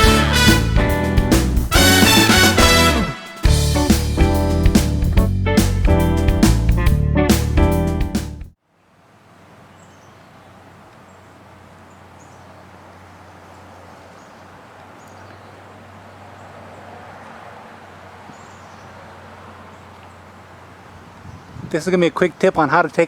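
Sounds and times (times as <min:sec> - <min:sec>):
small birds chirping: 0:09.2 - 0:23.0.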